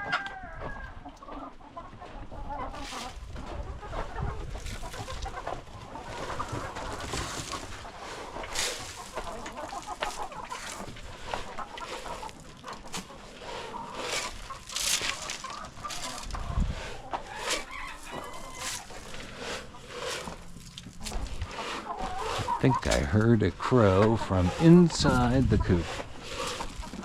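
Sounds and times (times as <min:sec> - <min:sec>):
rooster crowing: 0:00.0 - 0:01.0, 0:17.3 - 0:18.9
chickens clucking: 0:00.0 - 0:27.0.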